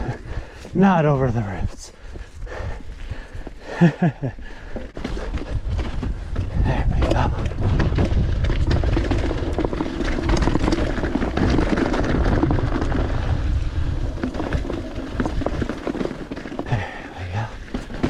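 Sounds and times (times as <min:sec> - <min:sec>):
wind buffeting microphone: 0:00.0 - 0:00.8, 0:01.4 - 0:15.9
bike rattling and clattering: 0:02.5 - 0:18.0
bike tyres rumbling over rocks: 0:02.5 - 0:18.0.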